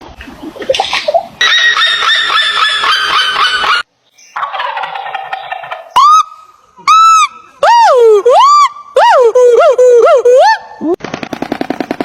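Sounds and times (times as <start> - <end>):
turkey gobbling: 1.4 - 7.3.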